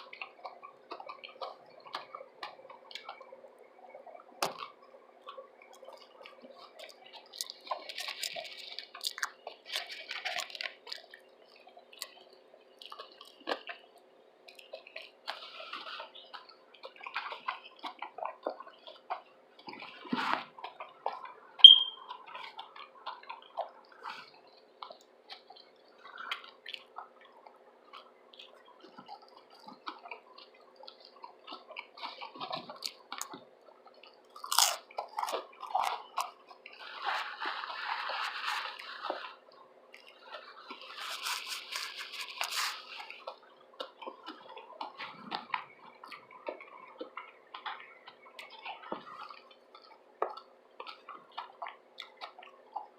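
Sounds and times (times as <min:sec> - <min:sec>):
wet chewing mouth clicks: 0:04.4 - 0:13.9, 0:24.8 - 0:36.8, 0:40.0 - 0:52.9
crunching: 0:06.8 - 0:11.2, 0:34.3 - 0:39.2
high-pitched squeak: 0:21.6 - 0:22.0
crunchy bite: 0:34.4 - 0:36.3.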